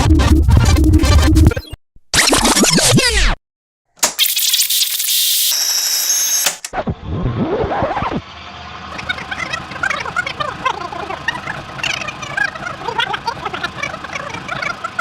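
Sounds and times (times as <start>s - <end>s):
tape rewinding squeaky chatter: 4.0s - 6.6s.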